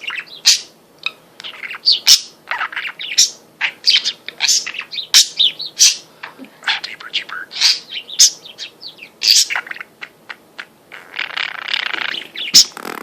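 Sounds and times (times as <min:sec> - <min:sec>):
budgerigar chirping and warbling: 0:00.0 - 0:06.0, 0:06.6 - 0:13.0.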